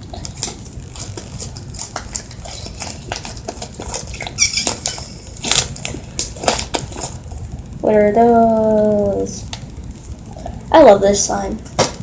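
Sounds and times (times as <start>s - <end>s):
slime squeak: 4.0s - 6.0s.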